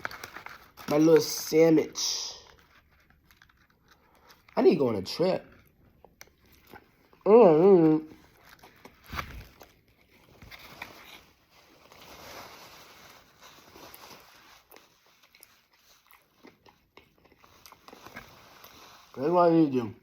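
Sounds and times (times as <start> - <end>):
person chewing sandwich: 2.4 - 4.6, 5.4 - 7.2, 7.8 - 19.2.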